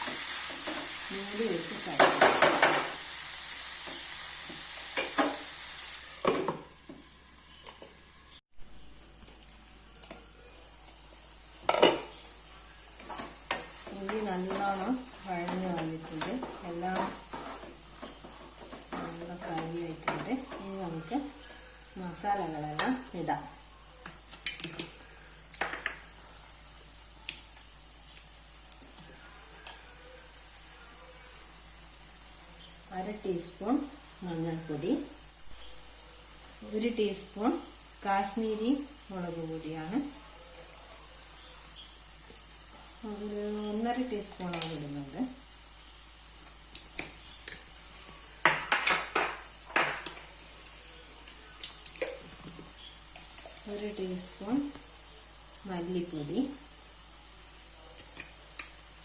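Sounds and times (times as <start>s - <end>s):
vegetables sizzling in oil: 0.0s - 59.0s
metal spoon clinking on cookware: 24.3s - 24.9s, 25.5s - 26.0s, 44.4s - 45.0s, 48.4s - 50.3s
metal utensil clinking on pan: 44.4s - 45.0s.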